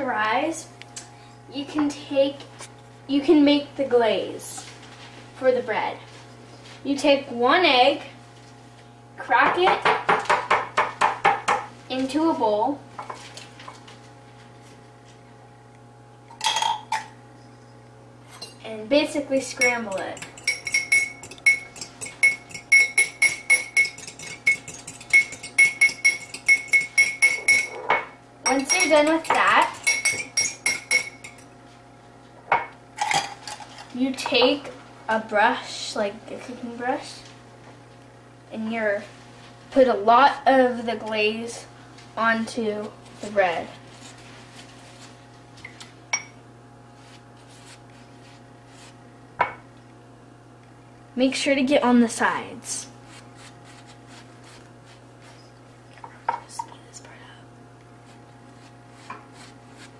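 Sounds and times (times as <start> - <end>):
steady low hum: 0.0 - 59.9
brush dabbing dough: 19.3 - 27.1, 42.7 - 45.3, 46.9 - 49.0, 52.6 - 55.6, 58.0 - 59.9
utensil clinking against a bowl: 19.6 - 31.5.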